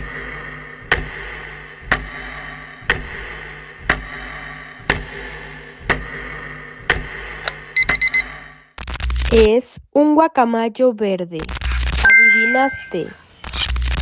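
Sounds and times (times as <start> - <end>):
short high beeps: 12.1 - 13.1.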